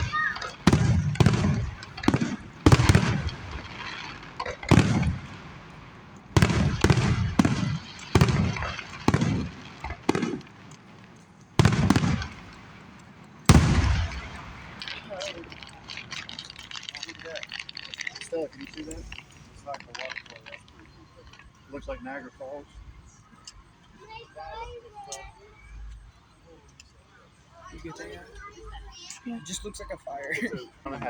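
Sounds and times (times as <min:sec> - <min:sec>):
fireworks bangs with echo: 0:00.0 - 0:21.4.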